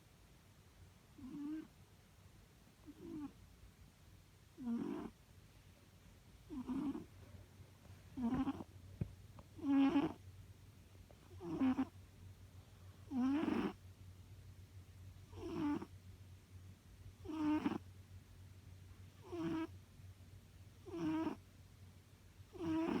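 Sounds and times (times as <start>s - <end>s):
cat snoring: 1.2s - 1.7s, 2.8s - 3.4s, 4.6s - 5.2s, 6.5s - 7.1s, 8.2s - 8.7s, 9.6s - 10.2s, 11.3s - 12.0s, 13.1s - 13.8s, 15.3s - 15.9s, 17.2s - 17.8s, 19.2s - 19.7s, 20.8s - 21.4s, 22.5s - 23.0s.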